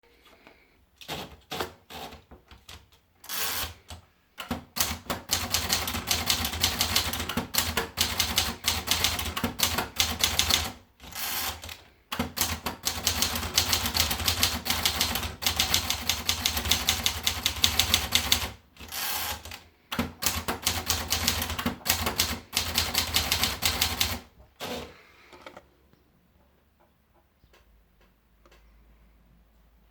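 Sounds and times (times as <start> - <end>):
typewriter keys clattering: 4.8 - 24.2.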